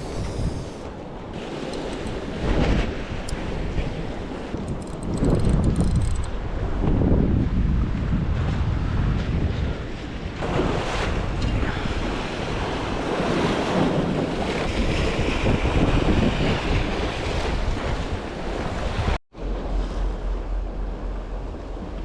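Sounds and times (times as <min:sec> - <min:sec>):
wind buffeting microphone: 0:00.0 - 0:22.0
waves washing at shore: 0:10.4 - 0:19.9.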